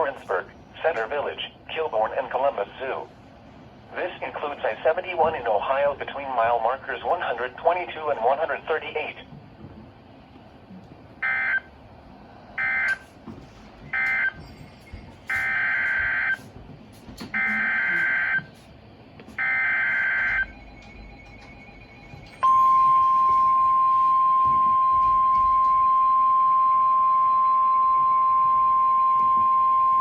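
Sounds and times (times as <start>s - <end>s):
steady warning alarm tone: 11.2s - 11.7s, 12.6s - 13.2s, 13.8s - 16.5s, 17.2s - 18.6s, 19.3s - 30.0s.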